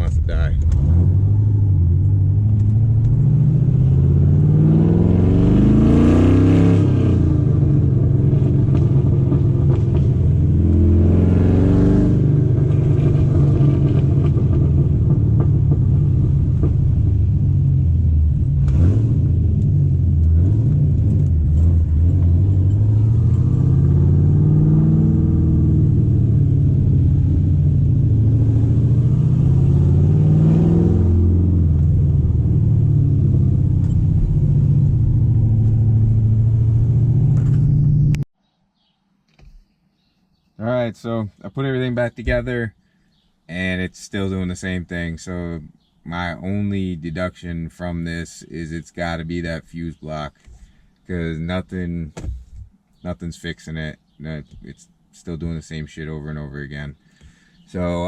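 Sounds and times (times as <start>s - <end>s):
car engine accelerating: 0.0s - 38.3s.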